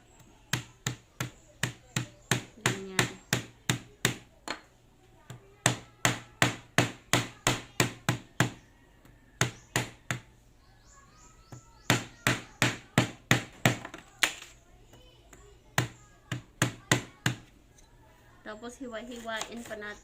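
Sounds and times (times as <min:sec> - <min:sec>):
ginger being pounded: 0:00.5 - 0:04.3, 0:05.3 - 0:08.6, 0:09.4 - 0:10.3, 0:11.8 - 0:14.4, 0:15.8 - 0:17.5.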